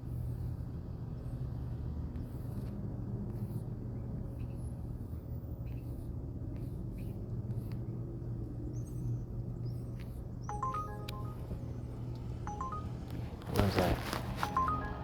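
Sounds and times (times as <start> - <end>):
electronic beep tones: 10.5 - 11.8, 12.5 - 15.0.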